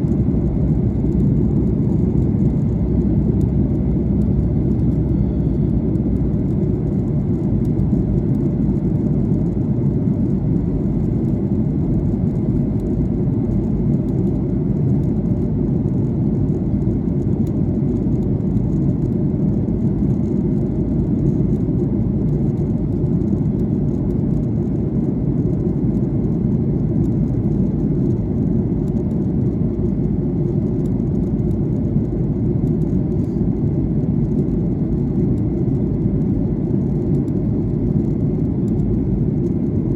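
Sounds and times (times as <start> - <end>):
airliner engine and airflow rumble: 0.0 - 39.9.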